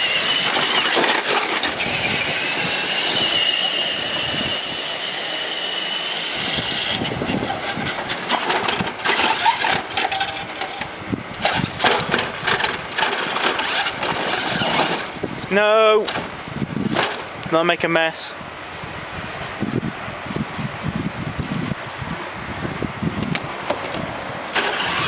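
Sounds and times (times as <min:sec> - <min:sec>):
small electric motor whining: 0:00.0 - 0:15.2
knocks and rattles: 0:00.4 - 0:02.0, 0:07.4 - 0:15.2, 0:16.0 - 0:16.3, 0:16.9 - 0:17.3.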